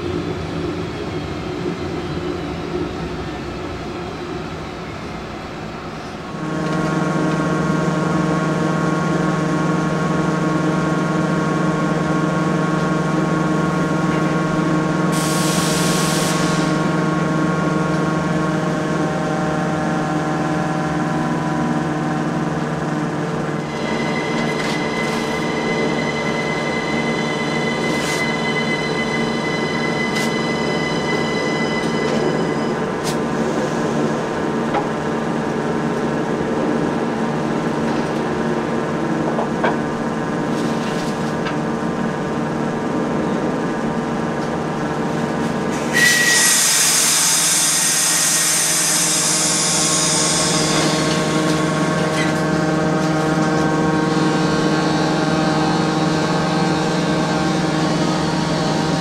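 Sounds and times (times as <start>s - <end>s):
train traction whine: 0.0s - 59.0s
rush of hiss: 46.0s - 51.8s.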